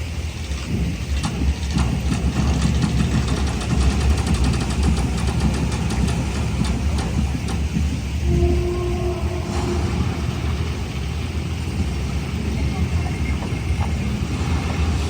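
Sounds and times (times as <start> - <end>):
faint rapid ticking: 0.4 - 15.0
low steady rumble: 2.8 - 15.0.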